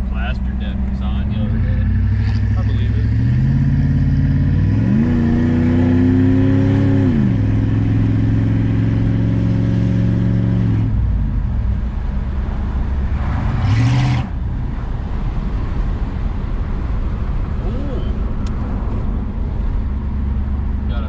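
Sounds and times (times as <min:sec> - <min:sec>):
car engine pulling under throttle: 0:00.0 - 0:21.0.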